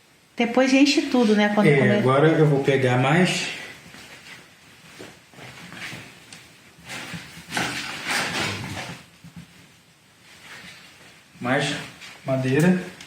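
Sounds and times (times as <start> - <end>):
logs scraping and rustling: 6.9 - 9.1.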